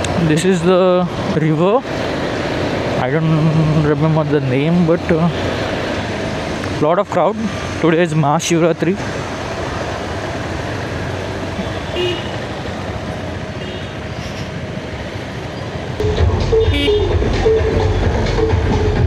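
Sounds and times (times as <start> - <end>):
street traffic noise: 0.0 - 19.0
vehicle horn toots: 11.6 - 12.4, 16.1 - 18.1
electronic dance music: 16.0 - 19.0.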